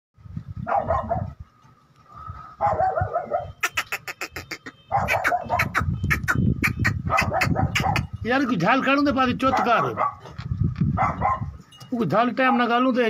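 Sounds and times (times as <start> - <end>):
animal wavering calls: 2.2 - 8.1.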